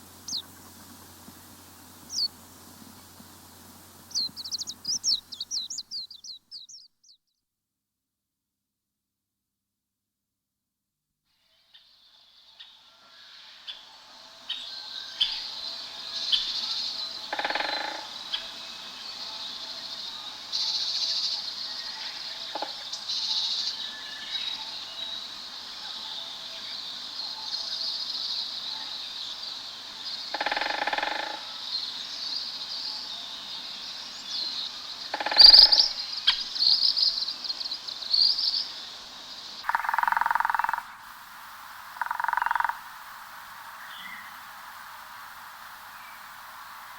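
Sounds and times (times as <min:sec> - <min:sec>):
low croaking call: 0:00.0 - 0:06.8, 0:17.3 - 0:18.4, 0:22.4 - 0:23.0, 0:30.3 - 0:31.6, 0:35.0 - 0:36.5, 0:39.6 - 0:41.1, 0:41.9 - 0:44.4
birds chirping and trilling: 0:00.1 - 0:07.2, 0:26.8 - 0:41.0.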